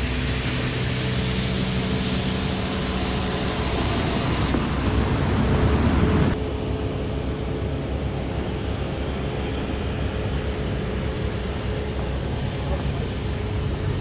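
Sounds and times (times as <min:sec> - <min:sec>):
loud car exhaust: 0:00.0 - 0:06.4
engine drone: 0:00.0 - 0:14.0.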